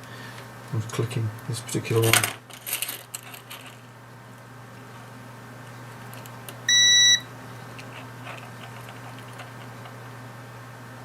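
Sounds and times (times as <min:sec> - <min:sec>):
multimeter beep: 0:06.7 - 0:07.3.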